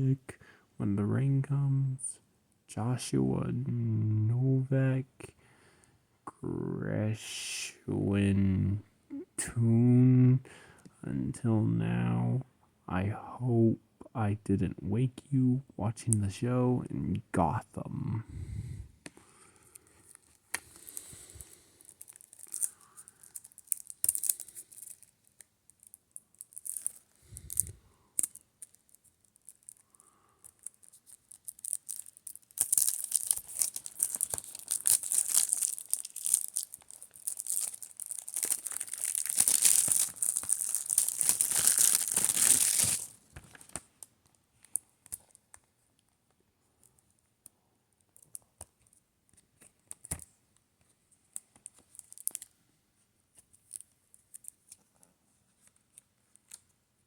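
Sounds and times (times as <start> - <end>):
plastic wrapping crinkling and tearing: 19.6 - 45.6, 51.3 - 52.5.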